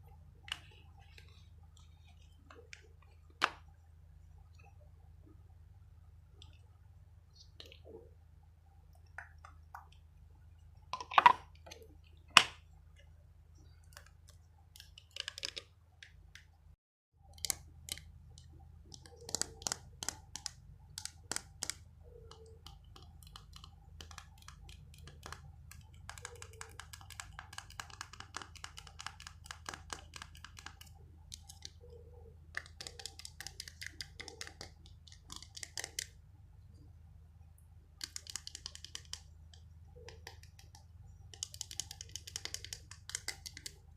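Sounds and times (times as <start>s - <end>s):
low steady hum: 0.0s - 43.9s
light tapping or scratching: 17.9s - 36.2s.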